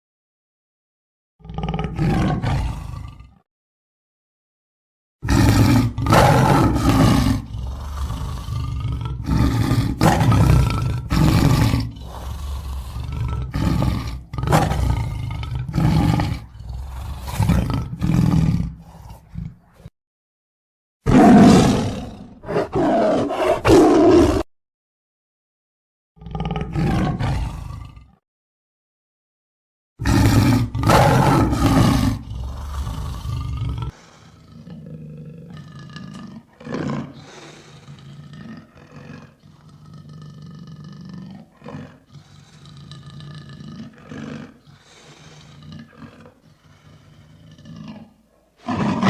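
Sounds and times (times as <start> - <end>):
lion roaring: 1.4 - 3.4, 5.2 - 19.9, 21.1 - 24.5, 26.2 - 28.2, 30.0 - 49.0
lion grunts: 5.2 - 19.9, 30.0 - 49.0.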